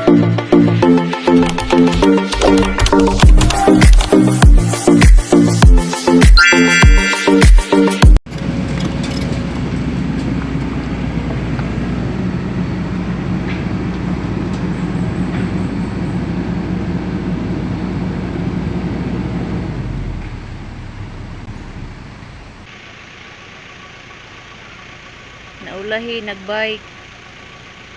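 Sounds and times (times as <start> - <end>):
vehicle engine running: 8.2 - 27.9.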